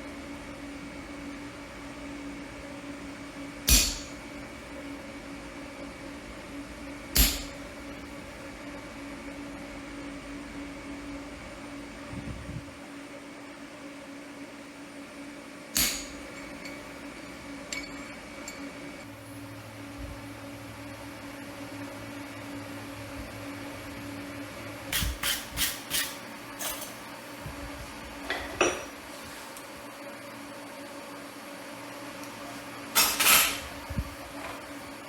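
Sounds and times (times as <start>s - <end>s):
steady machine hum: 0.0s - 35.0s
hammer striking steel anvil: 3.7s - 4.1s, 7.2s - 7.5s.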